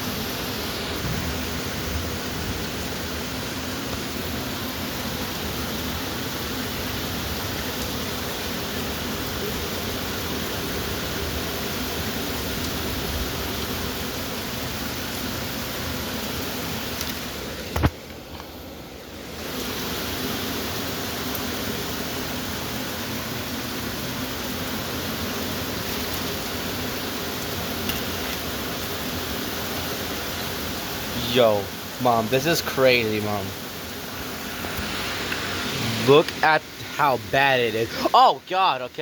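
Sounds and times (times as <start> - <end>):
heavy rain pouring: 19.4 - 39.0.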